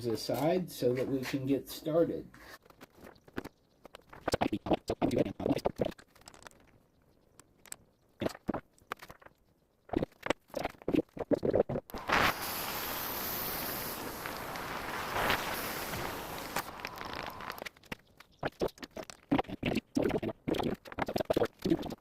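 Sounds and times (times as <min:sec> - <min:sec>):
small parts and tools clicking: 0:05.5 - 0:10.8
power tool running with hiss: 0:12.0 - 0:17.6.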